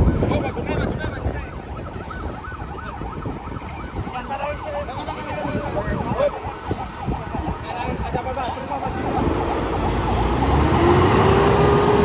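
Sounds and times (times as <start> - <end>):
electronic siren yelping: 0.0 - 10.6
low rumble of vehicles: 0.0 - 12.0.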